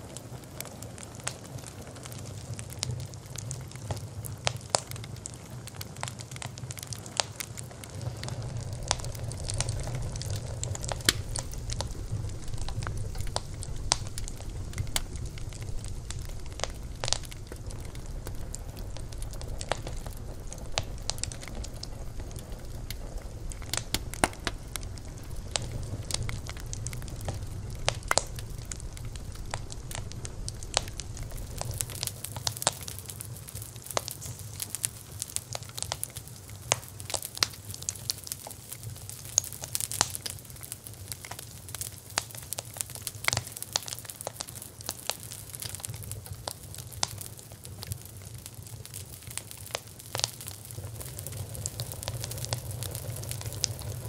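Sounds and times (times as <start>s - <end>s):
bonfire crackling and popping: 0.0s - 54.0s
low rumble: 7.6s - 33.2s.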